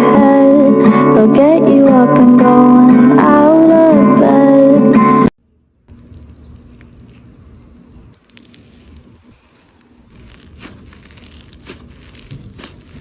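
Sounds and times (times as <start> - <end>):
slime squeezed by hand: 6.0 - 13.0.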